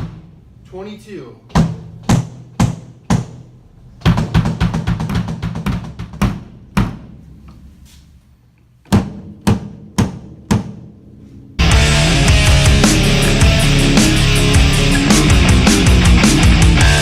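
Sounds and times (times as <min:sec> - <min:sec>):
rapid drum hits: 0:01.5 - 0:07.5, 0:08.9 - 0:17.0
bass drum strikes: 0:08.9 - 0:17.0.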